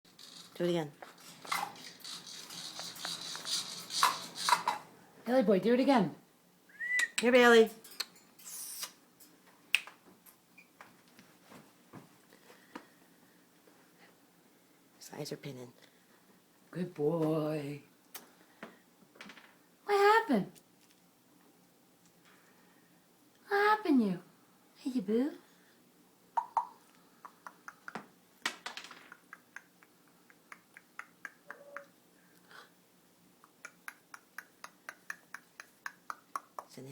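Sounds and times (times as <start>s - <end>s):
parrot chirp: 26.4s - 26.8s, 31.0s - 31.9s
parrot clicking: 26.4s - 28.0s, 29.0s - 31.9s, 33.4s - 36.8s.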